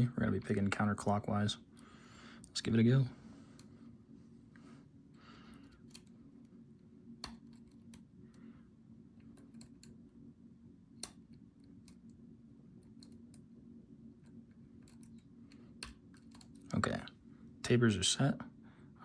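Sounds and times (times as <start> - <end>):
low steady hum: 0.0 - 19.0
lock pick clicking: 14.8 - 16.7.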